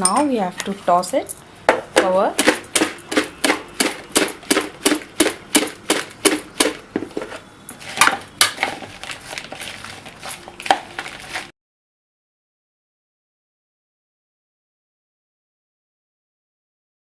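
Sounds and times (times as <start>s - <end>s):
fries shaken in a container: 7.8s - 11.5s.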